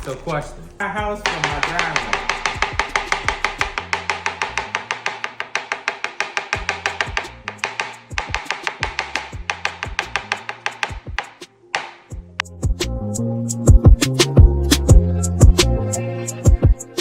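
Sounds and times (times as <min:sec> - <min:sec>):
knife chopping on cutting board: 0:01.3 - 0:12.3
background music with bass: 0:12.2 - 0:17.0.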